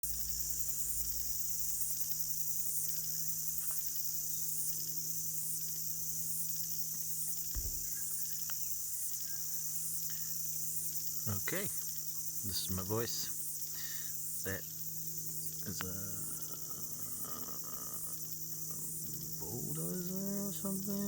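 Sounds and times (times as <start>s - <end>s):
insects chirping in pulses: 0.0s - 21.0s
steady low hum: 7.5s - 8.5s, 10.4s - 21.0s
low bump: 7.6s - 8.0s.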